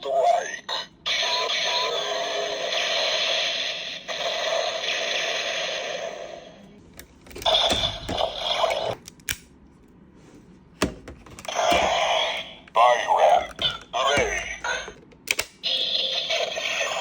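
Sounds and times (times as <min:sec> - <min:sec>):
toy electronic sound effects: 0:00.2 - 0:06.4, 0:11.5 - 0:15.0, 0:15.6 - 0:17.0.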